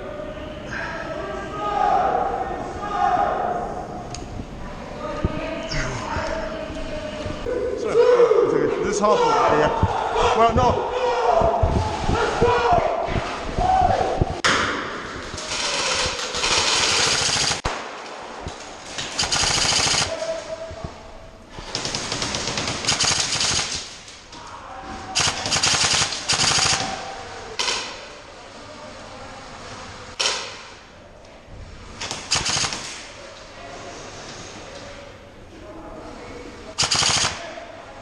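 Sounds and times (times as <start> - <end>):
airsoft guns firing bursts: 15.3 - 17.9, 18.9 - 20.2, 21.6 - 24.0, 25.2 - 27.0, 32.0 - 33.0, 36.8 - 37.5.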